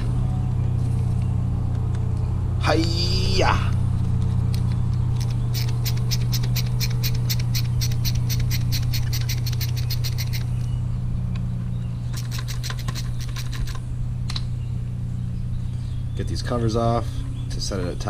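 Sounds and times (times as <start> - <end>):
lawn mower engine drone: 0.0 - 18.0
rapid sharp clicks: 4.0 - 10.7, 12.1 - 14.5.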